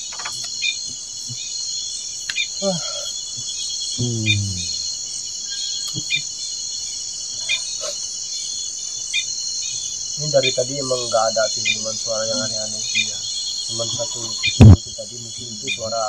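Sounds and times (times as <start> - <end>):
crickets and insects chirring: 0.0 - 16.0
low voice: 4.0 - 4.8, 10.2 - 16.0.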